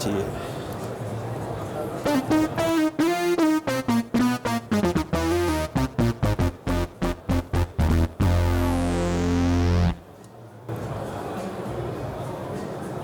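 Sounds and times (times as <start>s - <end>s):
synthesizer notes and chord: 2.1s - 10.0s.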